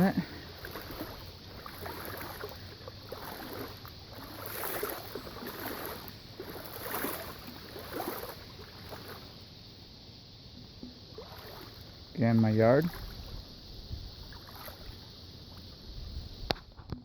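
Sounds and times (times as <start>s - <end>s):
tyres splashing through floodwater: 0.0s - 9.4s, 11.1s - 13.4s, 14.3s - 15.0s.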